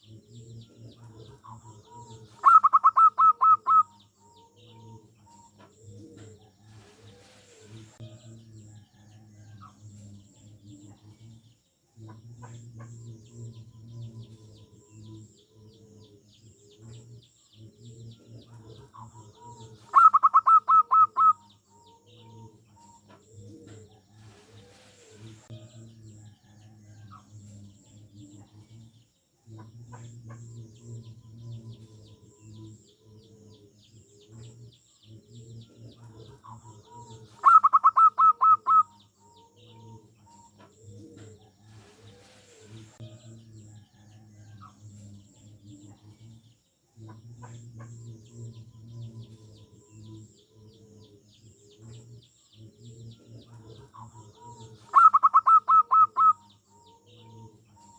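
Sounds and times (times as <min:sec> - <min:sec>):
dove staccato cooing: 0:00.0 - 0:08.0, 0:12.0 - 0:25.5, 0:29.6 - 0:43.0, 0:47.0 - 0:57.9
soft low dove calls: 0:00.0 - 0:08.0, 0:14.6 - 0:25.5, 0:31.8 - 0:43.0, 0:47.2 - 0:57.9
small birds chirping: 0:00.0 - 0:57.9.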